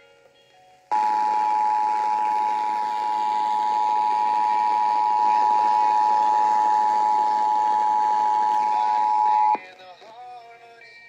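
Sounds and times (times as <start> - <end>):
radio hiss: 0.9 - 9.6
two-tone alert signal: 0.9 - 9.6.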